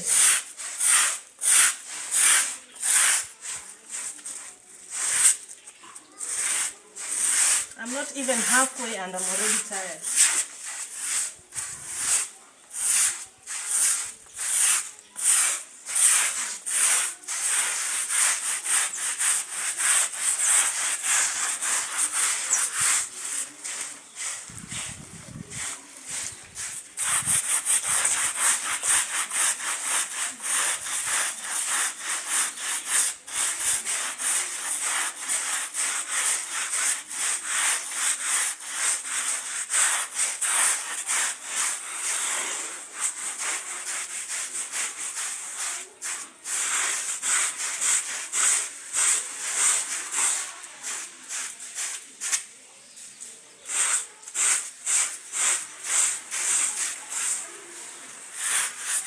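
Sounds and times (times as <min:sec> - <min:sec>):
brush scrubbing carpet: 0:00.0 - 0:05.5, 0:06.1 - 0:52.4, 0:53.7 - 0:59.0.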